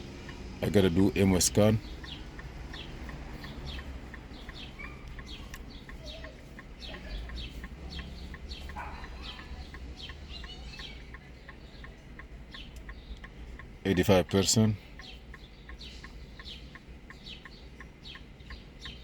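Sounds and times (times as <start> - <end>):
faint ticking: 0.0 - 19.0
birds chirping falling calls: 0.2 - 19.0.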